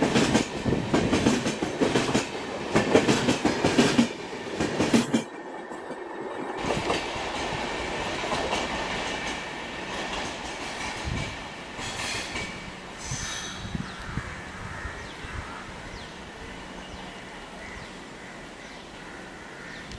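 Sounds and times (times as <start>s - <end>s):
train wheels clattering over rail joints: 0.0s - 5.4s, 6.5s - 13.8s
train rolling rumble: 0.0s - 19.0s.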